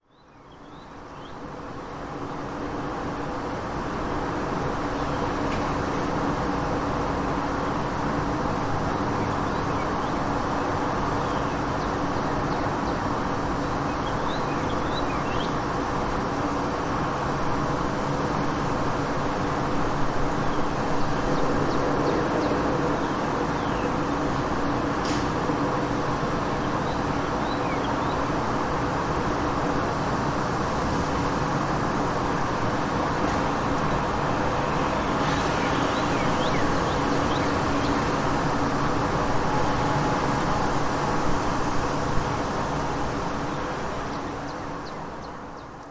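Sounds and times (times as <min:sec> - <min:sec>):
road traffic noise: 0:01.4 - 0:45.9.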